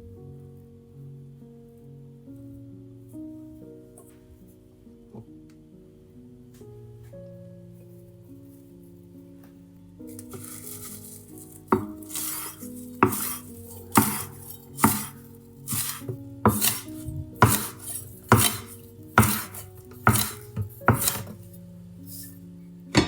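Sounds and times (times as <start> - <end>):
soft background music: 0.0 - 23.0
knife chopping on cutting board: 11.7 - 21.4.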